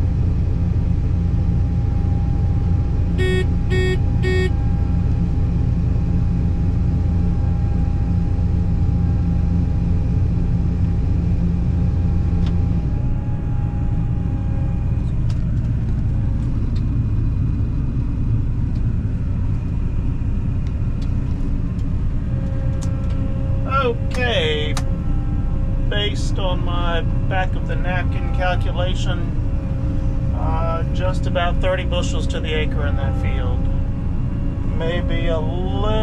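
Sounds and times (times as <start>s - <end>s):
short electronic beeps: 3.2s - 4.5s.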